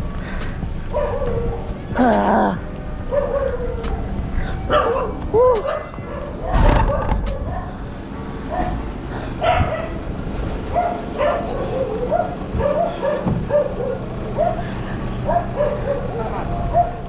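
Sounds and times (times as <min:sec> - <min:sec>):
low rumbling background: 0:00.0 - 0:17.0
dog barking: 0:00.9 - 0:01.6, 0:03.1 - 0:04.1, 0:04.7 - 0:07.8, 0:08.5 - 0:08.8, 0:09.4 - 0:10.0, 0:10.7 - 0:14.6, 0:15.2 - 0:17.0.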